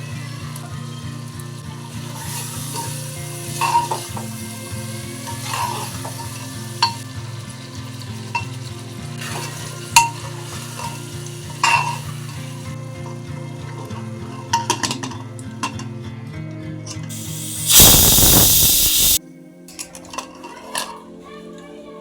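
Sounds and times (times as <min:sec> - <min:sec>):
food sizzling in a pot: 0:00.0 - 0:13.9, 0:17.1 - 0:19.2
metal spatula scraping a pot: 0:03.6 - 0:04.2, 0:05.3 - 0:06.4.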